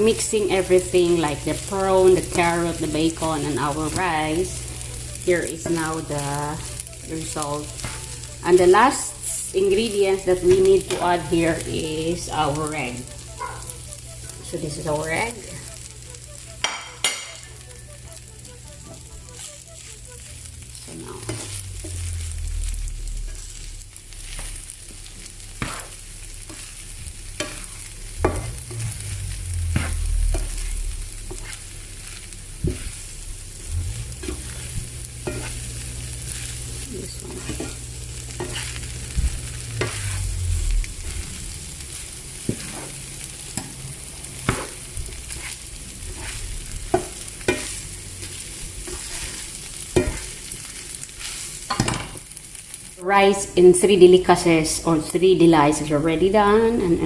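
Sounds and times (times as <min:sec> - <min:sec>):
rice sizzling in a frying pan: 0:00.0 - 0:57.0
spatula knocking and scraping pan: 0:16.6 - 0:17.5, 0:25.6 - 0:26.7, 0:27.4 - 0:29.0, 0:34.2 - 0:35.6, 0:37.2 - 0:40.2, 0:44.4 - 0:47.8, 0:48.9 - 0:50.4.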